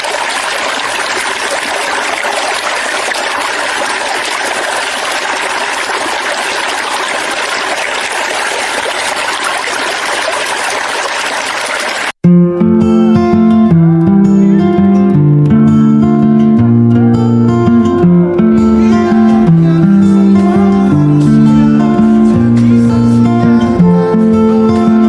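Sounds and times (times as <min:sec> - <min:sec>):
water flowing: 0:00.0 - 0:12.2.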